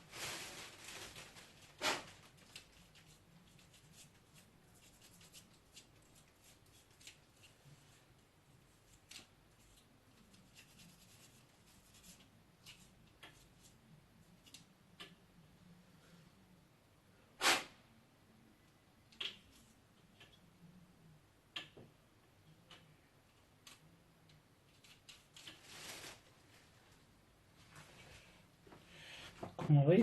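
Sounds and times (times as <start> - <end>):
fan parts rubbing and clicking: 1.7 - 15.1.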